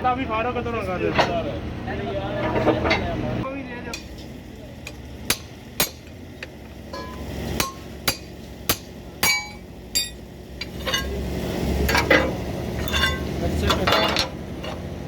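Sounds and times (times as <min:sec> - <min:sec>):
hammer striking metal: 0:04.0 - 0:11.2.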